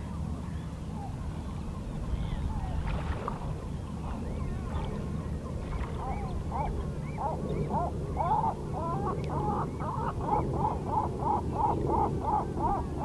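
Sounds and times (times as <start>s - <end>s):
small waves lapping against rocks: 2.7s - 6.9s
seabird calling: 3.6s - 13.0s.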